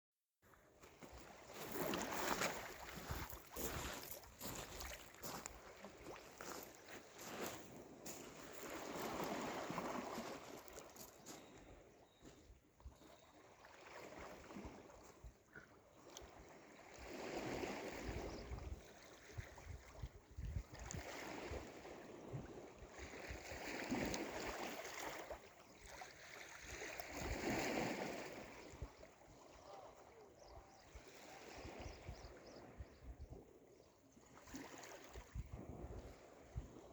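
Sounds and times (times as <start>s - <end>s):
sea waves washing: 1.4s - 11.0s
wind buffeting microphone: 35.3s - 36.9s.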